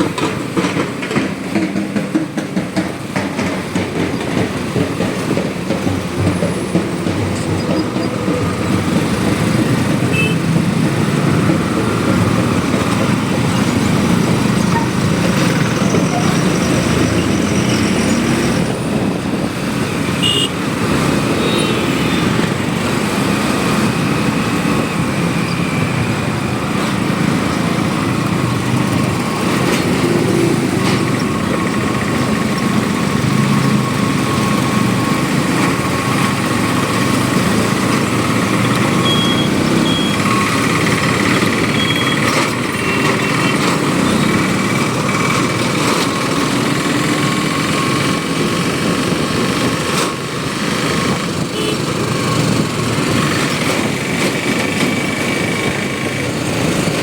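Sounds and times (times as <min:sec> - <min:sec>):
motorcycle riding: 0:00.0 - 0:57.0
other vehicles in traffic: 0:00.0 - 0:57.0.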